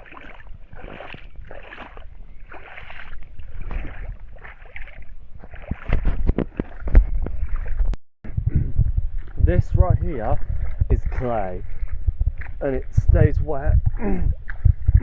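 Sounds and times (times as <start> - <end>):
footsteps squelching through mud: 0.0 - 15.0
low rumbling knocks: 5.4 - 15.0.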